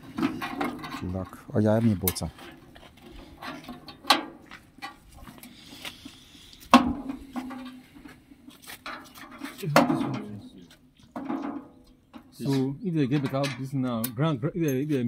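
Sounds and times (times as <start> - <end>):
metal clinks and knocks: 13.1 - 13.8.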